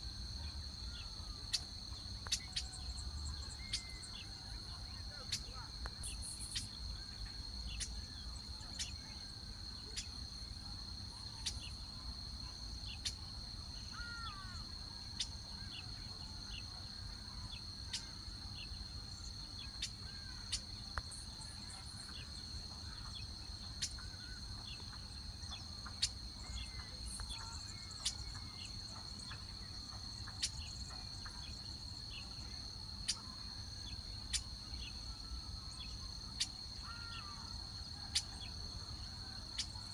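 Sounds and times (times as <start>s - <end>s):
insect trill: 0.0s - 39.9s
faint gliding bird calls: 13.8s - 39.9s.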